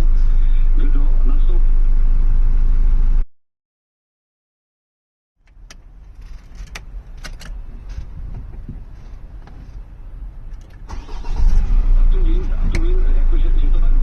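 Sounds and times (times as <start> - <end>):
low rumble: 0.0 - 3.3, 6.9 - 14.0
sharp clicks and knocks of handling: 5.4 - 9.6.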